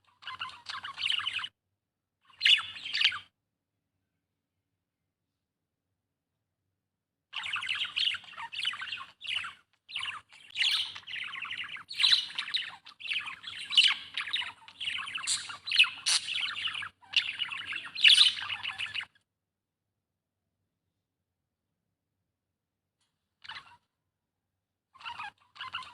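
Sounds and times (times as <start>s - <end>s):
budgerigar chattering: 7.7s - 19.1s.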